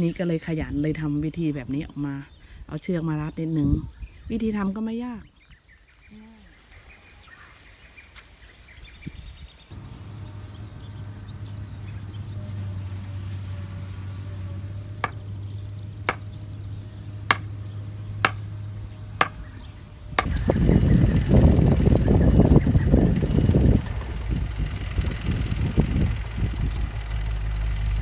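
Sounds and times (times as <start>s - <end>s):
sharp knocks: 15.0s - 15.2s, 16.1s - 16.3s, 17.3s - 17.5s, 18.2s - 18.5s, 19.2s - 19.5s.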